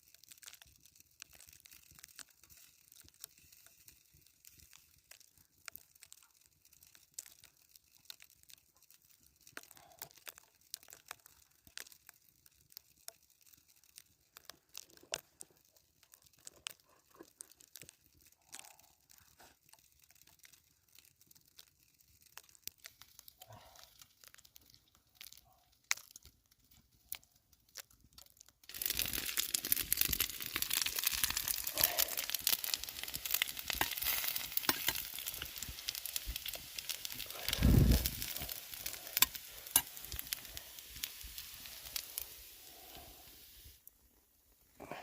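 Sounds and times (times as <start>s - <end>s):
food sizzling over a fire: 0.0s - 45.0s.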